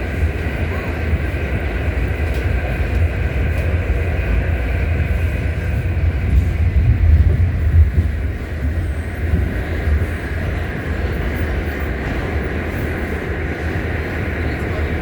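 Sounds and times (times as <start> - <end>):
rumble of wheels on track: 0.0 - 15.0
faint rail clicks: 2.1 - 3.8.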